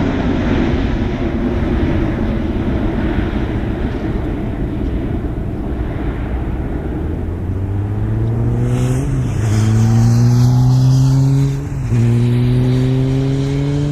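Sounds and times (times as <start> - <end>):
vehicle engine accelerating: 5.1 - 13.9.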